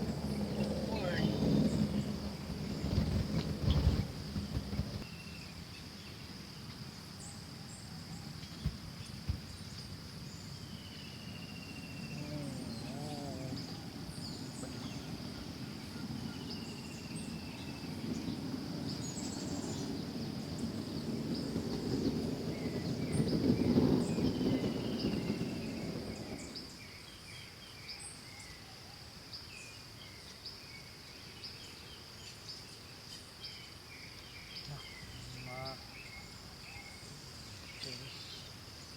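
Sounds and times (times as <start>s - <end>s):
low rushing noise: 0.0s - 5.1s
insects droning: 0.0s - 38.9s.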